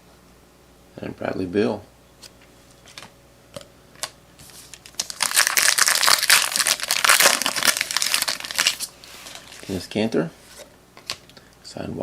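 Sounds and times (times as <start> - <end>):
foil wrapper crinkling: 4.0 - 9.8.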